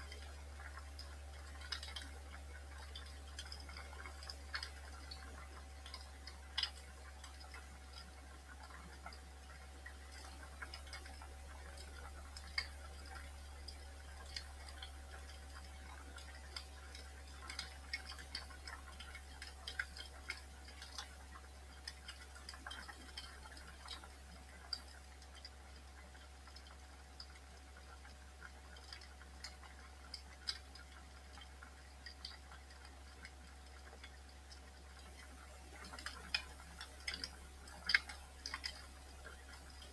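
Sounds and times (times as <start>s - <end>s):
low steady hum: 0.0s - 39.9s.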